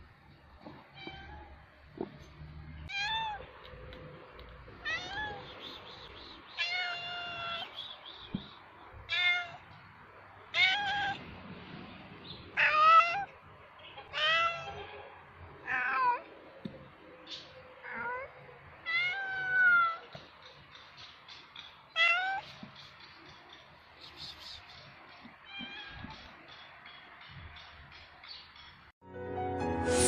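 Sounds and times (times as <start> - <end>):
cat meowing: 4.8 - 5.5, 6.6 - 7.7, 9.1 - 9.7, 10.5 - 11.2, 14.0 - 14.9, 17.8 - 20.1.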